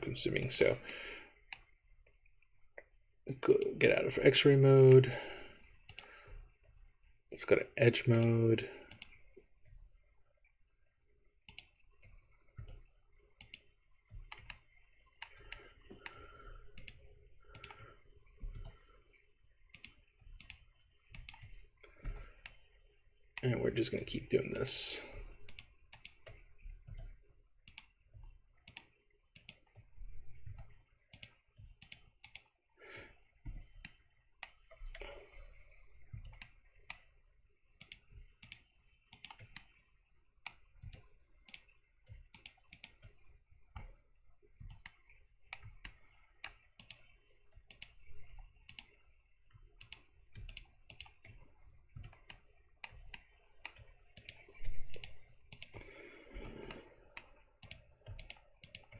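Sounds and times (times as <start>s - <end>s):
computer mouse clicking: 1.5s - 2.2s, 5.7s - 6.1s, 8.1s - 9.8s, 11.5s - 18.8s, 19.7s - 22.7s, 25.4s - 32.6s, 35.6s - 37.1s, 37.8s - 39.8s, 40.4s - 58.9s
keyboard keys clicking: 19.7s - 21.6s, 49.8s - 51.4s, 52.0s - 55.8s, 57.6s - 58.9s.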